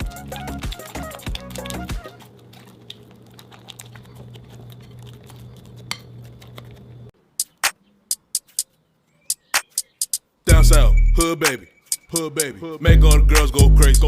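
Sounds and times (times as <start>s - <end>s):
slime clicks and crackles: 0.4s - 6.9s
sharp loud clicks: 7.4s - 8.7s
steady low hum: 12.9s - 14.0s.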